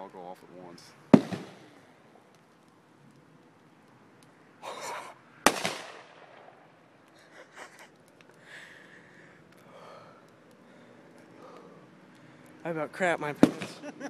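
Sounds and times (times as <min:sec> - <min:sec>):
cartridge bursting bang: 0:01.1 - 0:01.8, 0:05.5 - 0:06.7, 0:13.4 - 0:13.8.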